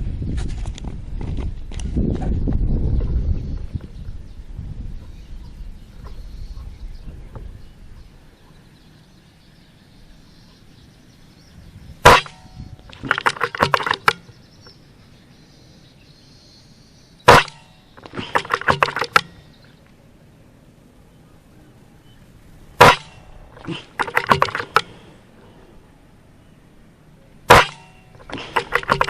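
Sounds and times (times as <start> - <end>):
air rifle shots: 12.0 - 14.3, 17.2 - 19.4, 22.8 - 25.0, 27.5 - 29.0
quick run of sharp clicks: 12.9 - 14.2, 18.0 - 19.4, 23.6 - 24.9, 27.5 - 29.0.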